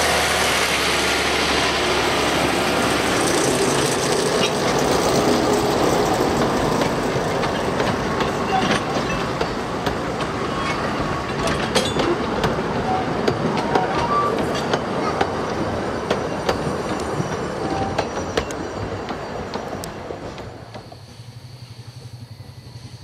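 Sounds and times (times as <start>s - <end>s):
train wheels clicking on rail joints: 0.5s - 23.0s
wheel squeaks: 6.8s - 21.0s.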